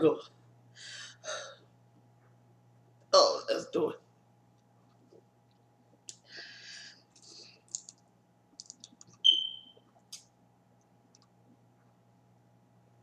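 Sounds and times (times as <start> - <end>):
clicks and taps: 8.6 - 9.5
short high-pitched ping: 9.3 - 9.7.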